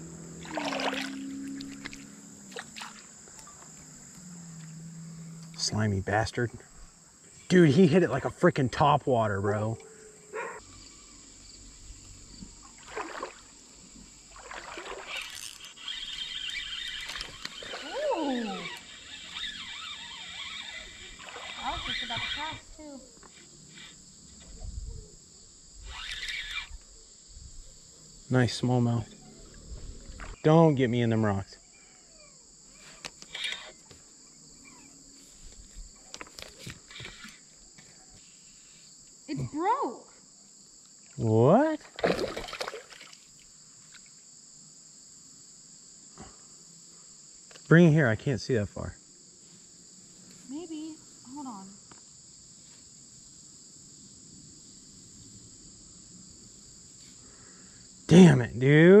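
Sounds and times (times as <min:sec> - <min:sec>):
creek water splashing: 0:00.0 - 0:03.4, 0:12.1 - 0:22.5, 0:41.0 - 0:44.0
high-pitched insect chorus: 0:00.0 - 0:59.0
rustles: 0:32.6 - 0:39.6, 0:49.2 - 0:58.0.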